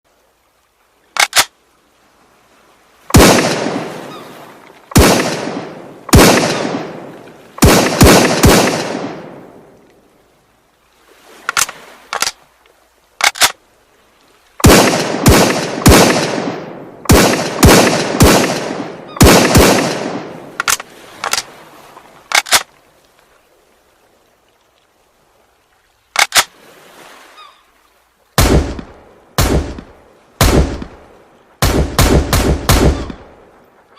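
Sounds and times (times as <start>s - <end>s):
rifle shots echoing: 3.1s - 4.2s, 4.9s - 9.6s, 14.6s - 21.4s, 28.4s - 33.5s.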